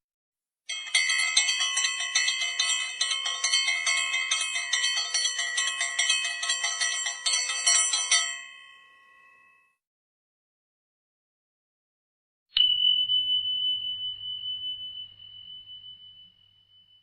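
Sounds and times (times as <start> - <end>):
bell ringing rapidly: 0.7 - 9.6.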